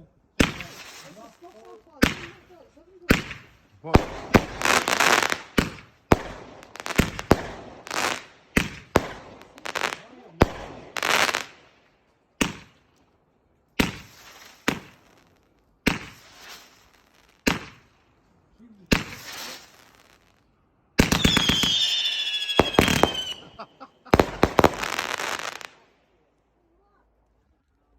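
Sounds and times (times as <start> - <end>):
fireworks bangs and crackle: 0.4 - 11.7, 12.4 - 12.9, 13.8 - 18.0, 18.9 - 20.4, 21.0 - 25.9
high falling whistle: 21.2 - 23.5.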